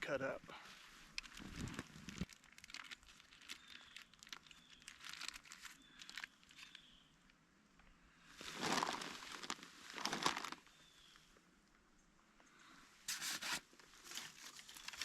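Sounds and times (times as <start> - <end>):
twigs clicking and snapping: 1.1 - 6.9, 14.1 - 15.0.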